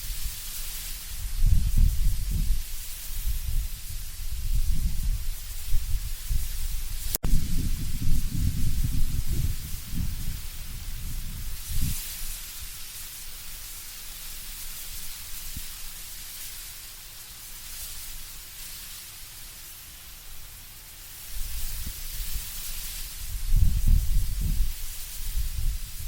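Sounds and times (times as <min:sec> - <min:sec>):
leaves rustling in wind: 0:00.0 - 0:26.0
low wind rumble: 0:01.0 - 0:12.8, 0:23.1 - 0:26.0.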